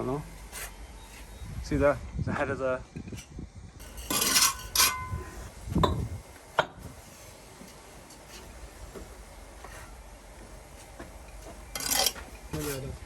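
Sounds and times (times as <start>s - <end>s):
trowel clinking and scraping on brick: 3.8s - 6.1s, 11.2s - 13.0s.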